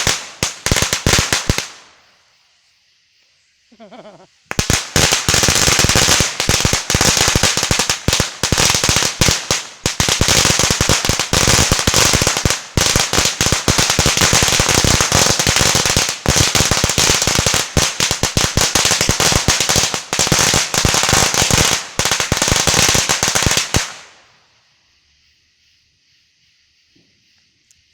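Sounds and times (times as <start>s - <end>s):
firecrackers rattling: 0.0s - 1.9s, 4.5s - 24.2s.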